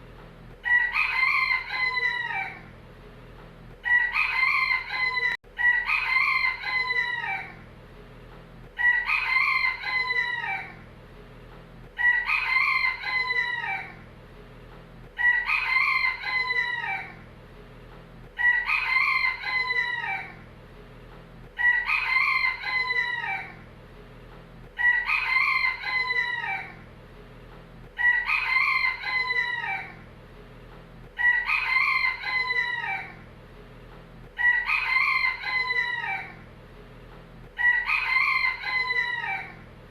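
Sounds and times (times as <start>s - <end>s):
rooster crowing: 0.6s - 2.7s, 3.8s - 7.6s, 8.8s - 10.8s, 12.0s - 14.0s, 15.2s - 17.2s, 18.4s - 20.4s, 21.6s - 23.6s, 24.8s - 26.8s, 28.0s - 30.0s, 31.2s - 33.2s, 34.4s - 36.4s, 37.6s - 39.6s.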